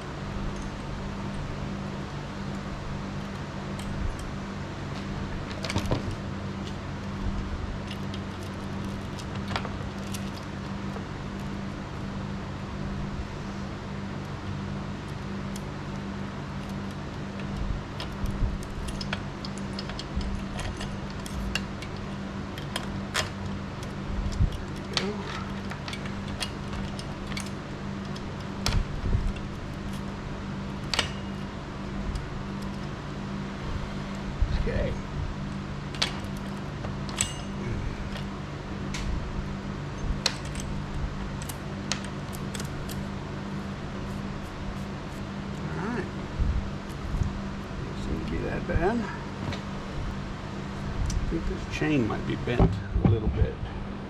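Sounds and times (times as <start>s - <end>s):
fan-like hum: 0.0s - 54.0s
metallic clinks and rattles: 16.6s - 30.1s, 35.9s - 38.2s.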